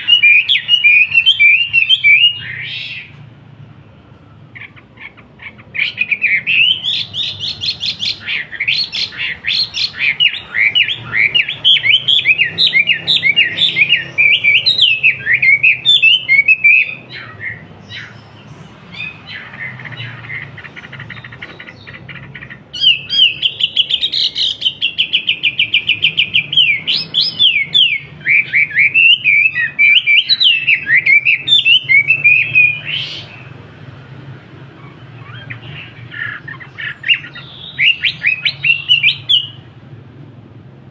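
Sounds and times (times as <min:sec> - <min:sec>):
songbird trilling: 0:00.0 - 0:03.2, 0:04.1 - 0:39.9.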